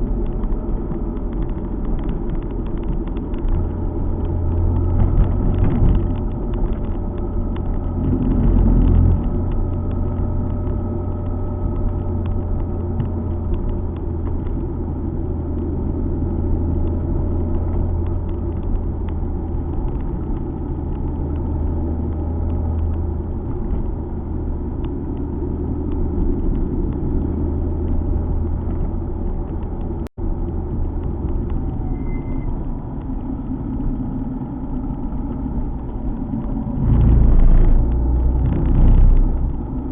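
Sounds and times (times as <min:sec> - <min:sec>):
tyre and road noise: 0:00.0 - 0:39.9
car engine running: 0:32.6 - 0:39.9.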